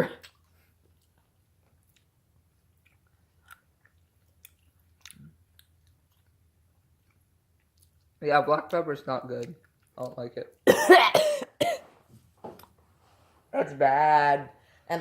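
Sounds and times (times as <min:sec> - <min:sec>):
soft chewing mouth clicks: 0:00.2 - 0:08.8.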